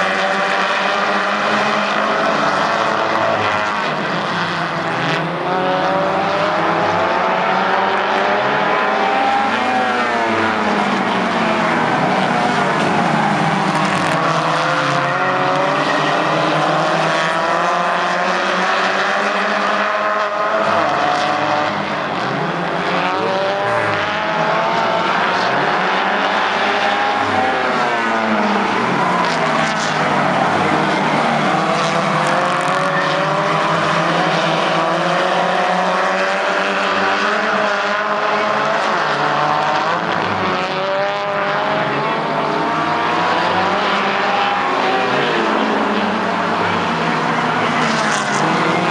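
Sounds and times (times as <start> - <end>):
race car engines: 0.0 - 48.9.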